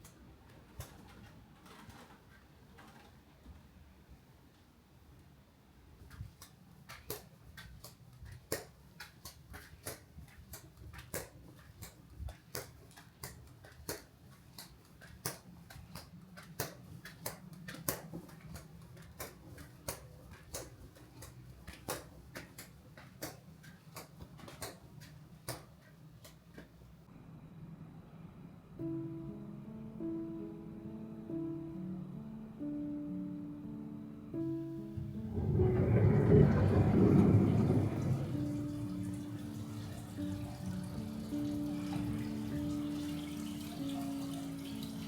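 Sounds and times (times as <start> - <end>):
low steady hum: 27.0 - 45.0.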